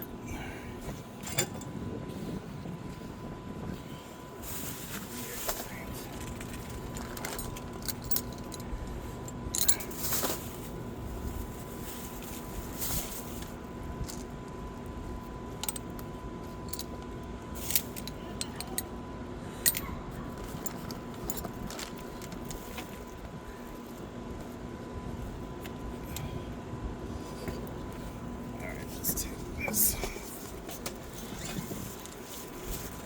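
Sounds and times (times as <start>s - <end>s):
faint steady hum: 0.0s - 33.0s
metallic clinks of tools: 7.2s - 8.7s, 9.3s - 10.4s, 15.6s - 15.9s, 17.6s - 18.9s, 19.6s - 20.0s.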